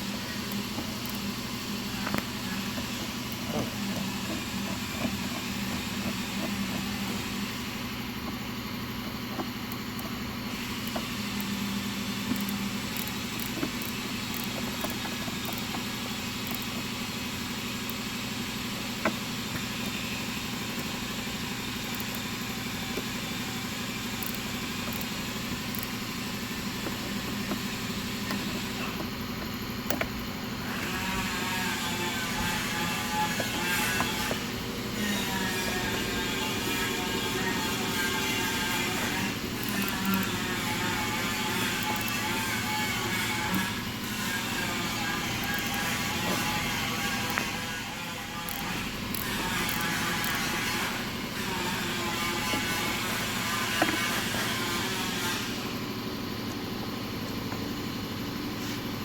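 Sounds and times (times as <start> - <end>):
workshop mechanical hum: 0.0 - 59.0
nut driver clicks and taps: 0.4 - 1.4, 2.0 - 7.2, 8.1 - 11.6, 12.2 - 17.0, 20.7 - 23.1, 24.0 - 26.0, 26.7 - 30.3, 39.6 - 40.4, 41.6 - 42.4, 45.2 - 47.6, 48.4 - 50.5.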